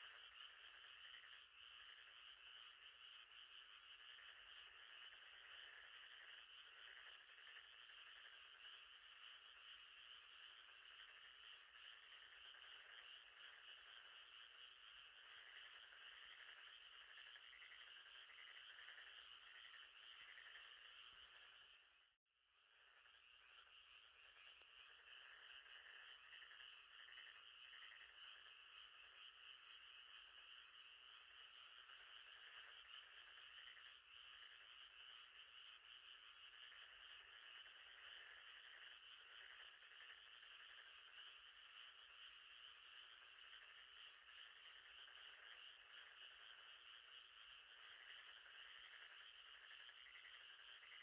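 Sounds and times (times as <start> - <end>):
frogs trilling: 0.0 - 51.0.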